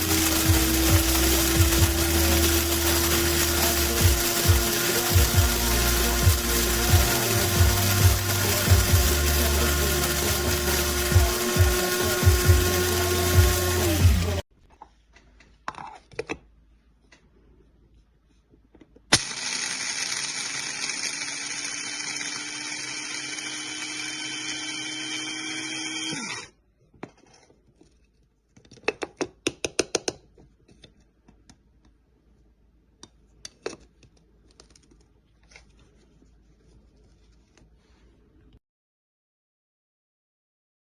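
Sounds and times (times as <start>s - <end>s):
electric coffee grinder whirring: 0.0s - 14.4s, 19.2s - 26.5s.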